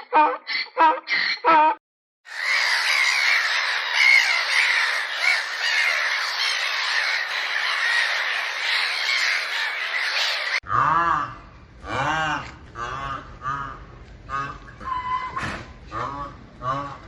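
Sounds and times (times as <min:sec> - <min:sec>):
flock of birds calling: 0:02.3 - 0:10.6.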